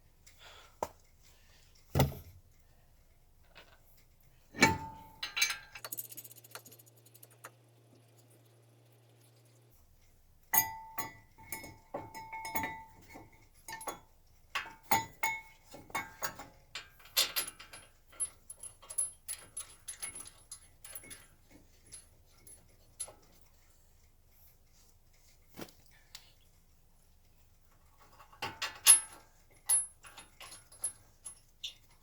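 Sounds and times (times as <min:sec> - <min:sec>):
metal tools clinking: 0:04.6 - 0:06.4, 0:10.6 - 0:14.0, 0:14.6 - 0:23.2, 0:28.0 - 0:32.0.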